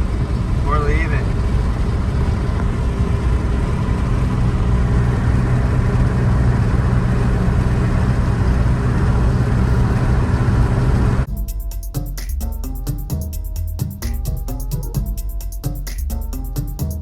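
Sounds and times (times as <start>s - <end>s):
car road and engine noise: 0.0s - 11.3s
low hum: 0.0s - 17.0s
music: 11.3s - 17.0s.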